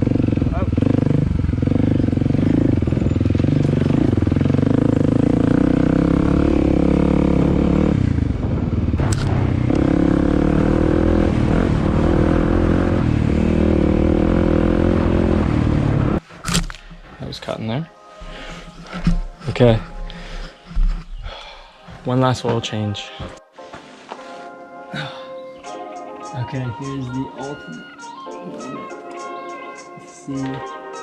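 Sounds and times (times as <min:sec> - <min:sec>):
dirt bike engine revving: 0:00.0 - 0:16.8
sharp click: 0:09.0 - 0:09.3, 0:16.4 - 0:17.0.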